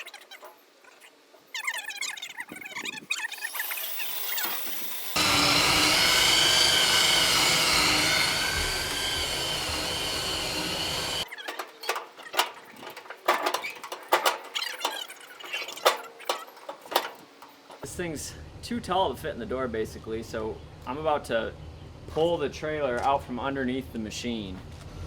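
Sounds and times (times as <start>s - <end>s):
power drill whining: 3.4s - 11.3s
clicks and knocks: 6.0s - 17.8s.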